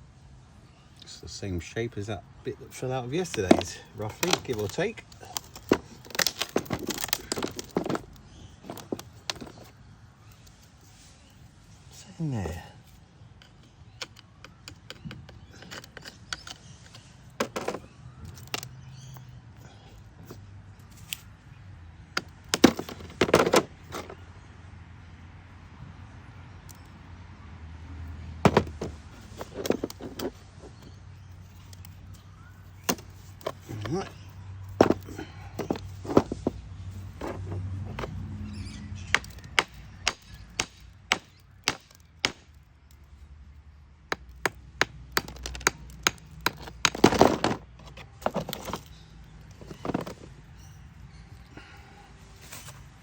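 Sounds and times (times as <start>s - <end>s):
hard pieces clicking and knocking: 2.8s - 10.7s, 12.8s - 19.3s, 22.1s - 24.2s, 28.4s - 43.2s, 44.0s - 50.8s.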